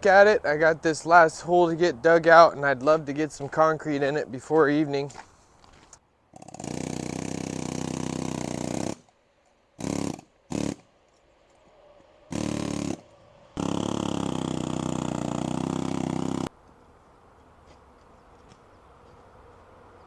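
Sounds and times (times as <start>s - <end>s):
pneumatic air hammer bursts: 6.4s - 9.1s, 9.8s - 10.9s, 12.3s - 16.5s.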